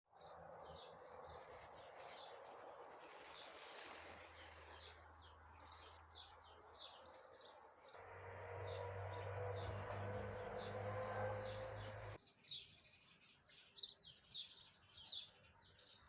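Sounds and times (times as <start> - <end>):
small birds chirping: 0.2 - 8.0, 8.6 - 16.0.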